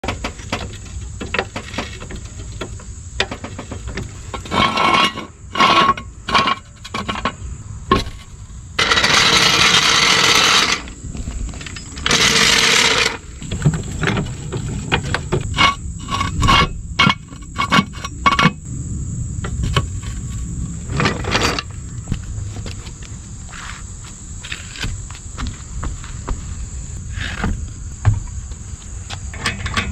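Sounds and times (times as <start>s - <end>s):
metallic clicks clanks and knocks: 0.0s - 10.8s, 29.3s - 29.9s
power tool bursts: 8.8s - 11.0s.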